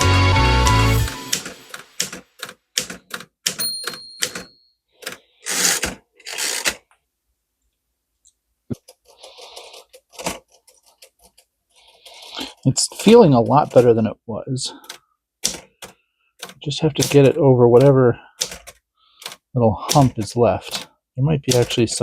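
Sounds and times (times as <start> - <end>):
typewriter typebars clacking: 1.1 - 6.8, 15.4 - 20.9, 21.5 - 22.0
short ringing tone: 3.6 - 4.8.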